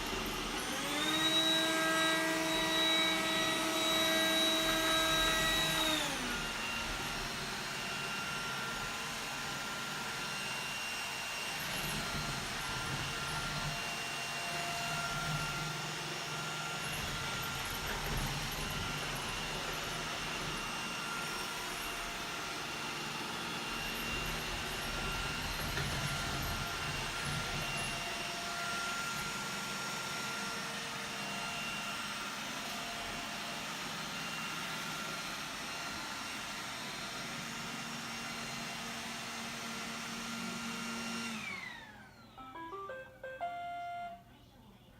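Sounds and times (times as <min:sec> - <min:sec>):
robot vacuum whirring: 0:00.0 - 0:42.6
electronic beep tune: 0:42.4 - 0:44.2.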